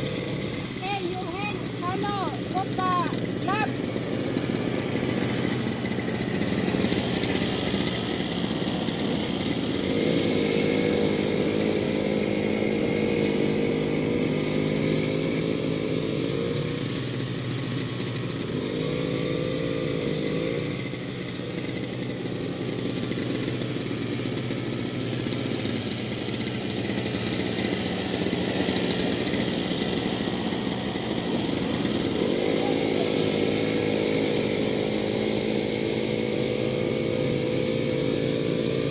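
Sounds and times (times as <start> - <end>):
small gasoline engine running: 0.0 - 38.9.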